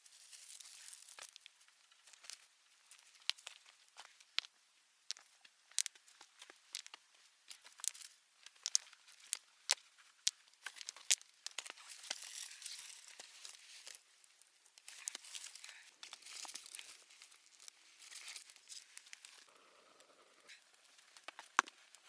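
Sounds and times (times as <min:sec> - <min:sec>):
dry leaves crackling and rustling: 0:00.0 - 0:01.4.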